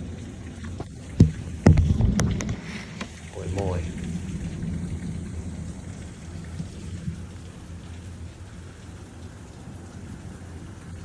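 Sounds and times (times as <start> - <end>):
steady rain: 0.0 - 11.0
thunder rumbling: 3.2 - 9.1.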